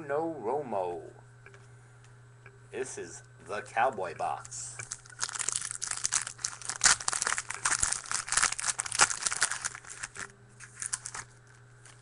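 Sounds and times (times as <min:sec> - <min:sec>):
foil wrapper tearing and crinkling: 0:04.8 - 0:12.0.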